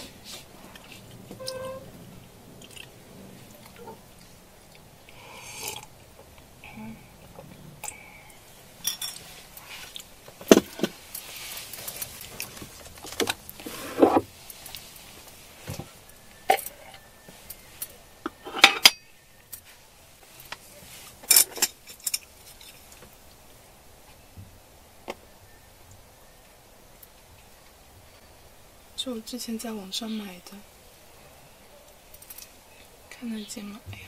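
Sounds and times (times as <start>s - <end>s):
chewing: 2.6s - 6.5s.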